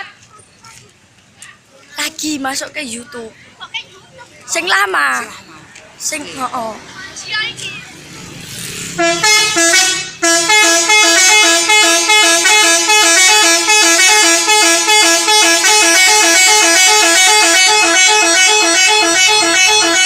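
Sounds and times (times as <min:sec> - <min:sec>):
bus horn playing a tune: 0:09.0 - 0:20.0.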